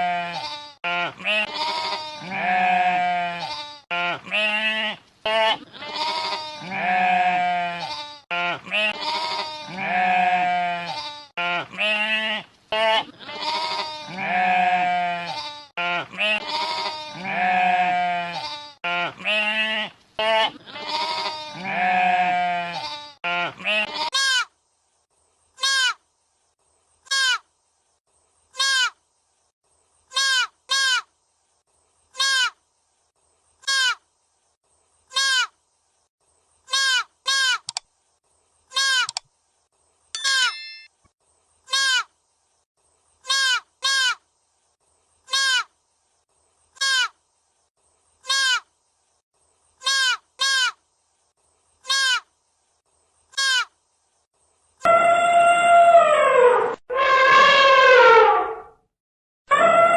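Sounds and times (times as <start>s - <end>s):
animal bleating: 0.0s - 24.5s, 25.6s - 26.0s, 27.1s - 27.4s, 28.6s - 29.0s, 30.1s - 31.0s, 32.2s - 32.6s, 33.6s - 34.0s, 35.1s - 35.5s, 36.7s - 37.7s, 38.7s - 39.2s, 41.7s - 42.1s, 43.3s - 44.2s, 45.3s - 45.7s, 46.8s - 47.1s, 48.2s - 48.6s, 49.8s - 50.8s, 51.8s - 52.2s, 53.4s - 53.7s.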